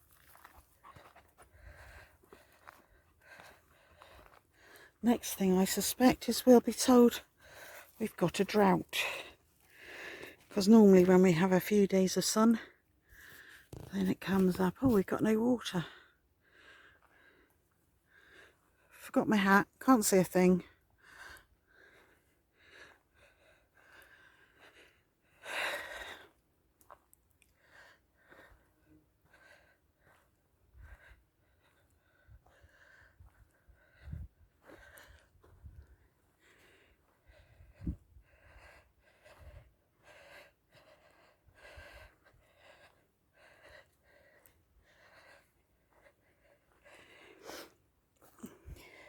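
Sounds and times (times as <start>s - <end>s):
faint heavy breathing: 0.3s - 6.0s, 27.6s - 49.0s.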